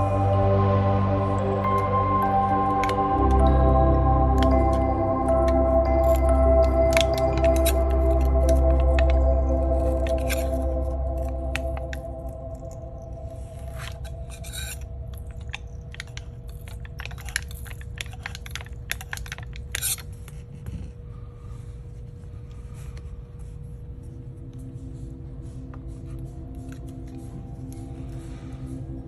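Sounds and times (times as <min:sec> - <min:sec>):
steady hum: 0:00.0 - 0:29.0
repair tool scraping battery: 0:13.7 - 0:20.5.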